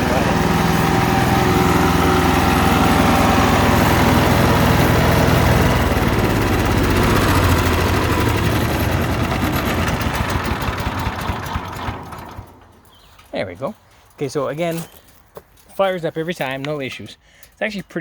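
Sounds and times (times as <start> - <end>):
wood chipper engine running: 0.0 - 13.2.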